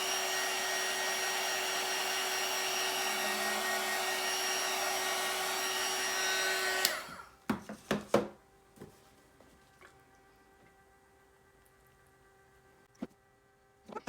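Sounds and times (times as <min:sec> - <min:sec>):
hot-air blower running: 0:00.0 - 0:07.4.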